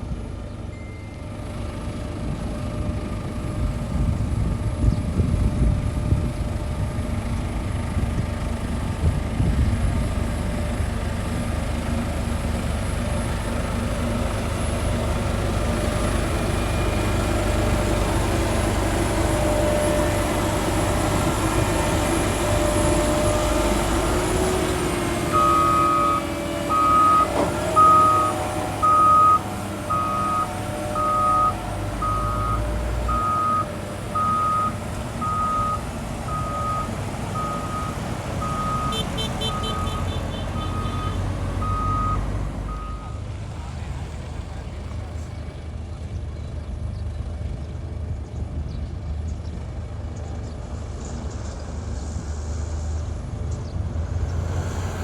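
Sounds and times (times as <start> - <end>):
heavy diesel machinery rumbling: 0.0 - 55.0
reversing alarm beeping: 15.8 - 43.2.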